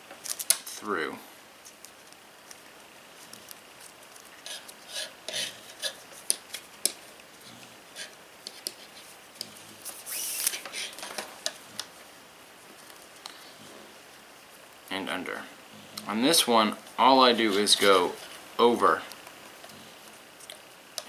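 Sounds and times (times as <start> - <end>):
cord rasping through a knot: 1.6 - 12.0.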